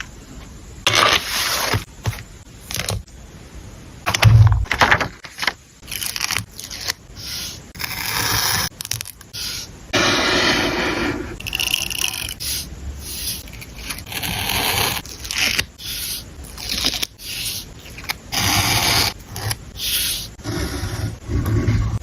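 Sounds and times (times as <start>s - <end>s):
paper scraping and rustling: 0.8s - 3.0s.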